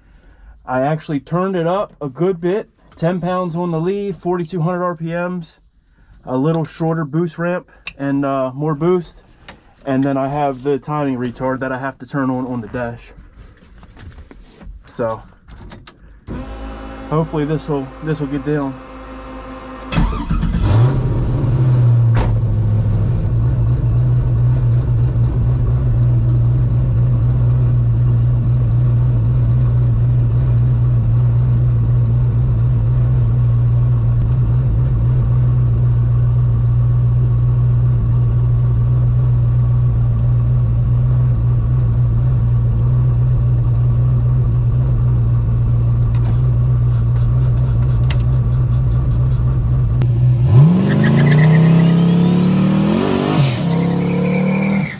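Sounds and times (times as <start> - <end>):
engine revving and running: 16.3 - 33.0, 50.0 - 54.9.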